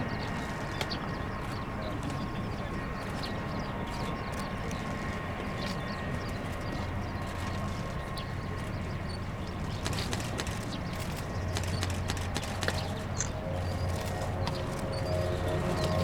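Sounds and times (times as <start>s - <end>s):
distant turboprop engine drone: 0.0s - 16.0s
faint clicks: 9.6s - 14.9s.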